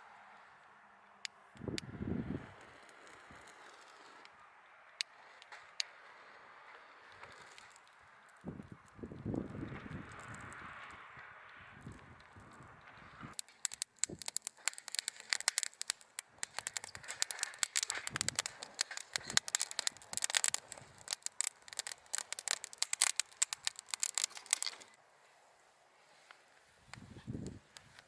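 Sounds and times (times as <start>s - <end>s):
plastic packaging crinkling: 13.3s - 25.0s.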